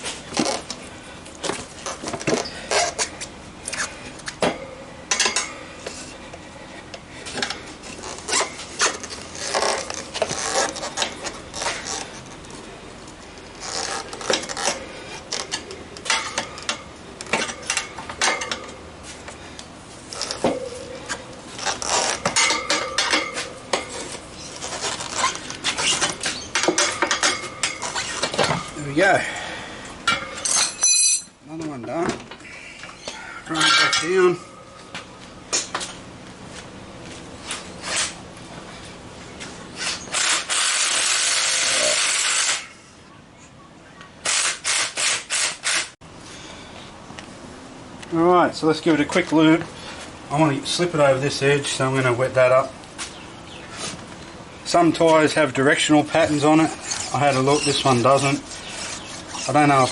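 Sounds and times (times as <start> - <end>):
metal tyre levers scraping wheel rim: 1.5 - 6.2, 7.4 - 12.5, 13.3 - 18.8, 20.0 - 28.8, 37.4 - 38.2, 56.1 - 59.9
short ringing squeaks: 30.1 - 31.4.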